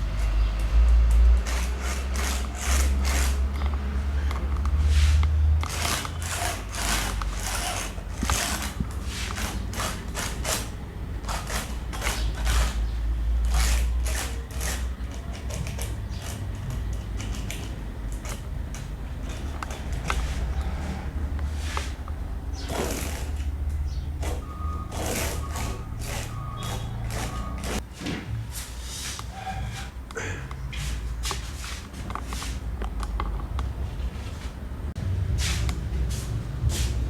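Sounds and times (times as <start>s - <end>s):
turning tool scraping wood: 0.0s - 27.8s
wood lathe humming: 0.0s - 27.8s.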